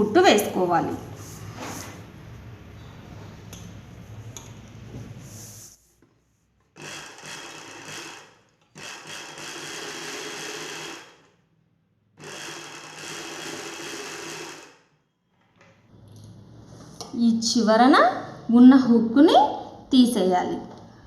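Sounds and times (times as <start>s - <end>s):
sewing machine stitching: 6.8s - 11.3s, 12.2s - 14.8s.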